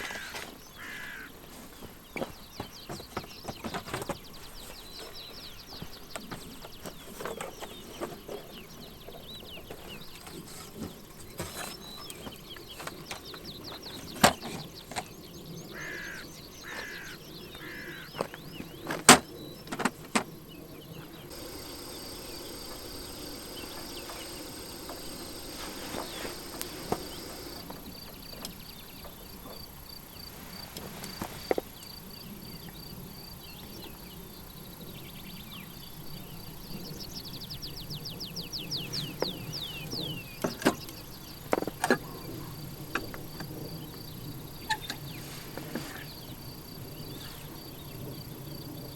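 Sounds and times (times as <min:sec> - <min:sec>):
birds calling in trills: 0:02.9 - 0:29.6
insects chirping: 0:21.0 - 0:36.7, 0:39.4 - 0:48.9
sharp clicks: 0:21.3 - 0:27.8.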